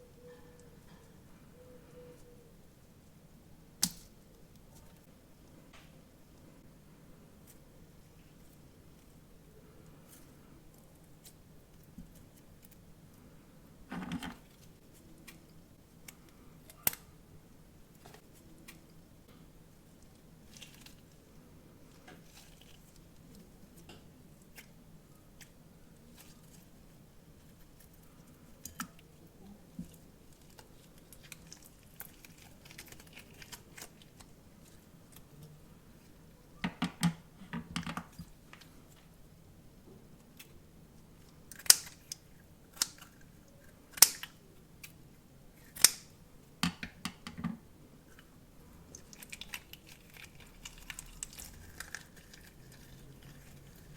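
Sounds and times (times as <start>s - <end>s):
faint clicks and crinkles: 27.4s - 36.2s, 48.1s - 53.9s.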